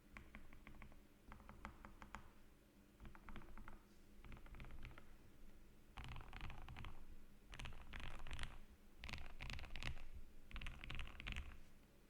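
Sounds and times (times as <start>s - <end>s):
mechanical keyboard typing: 3.0s - 5.0s, 6.0s - 11.6s.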